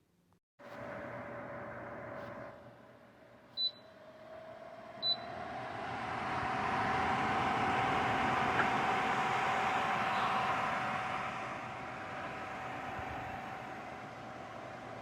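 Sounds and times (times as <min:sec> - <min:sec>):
cooler fan whirring hum: 0:00.6 - 0:15.0
control panel beeps: 0:03.6 - 0:03.8.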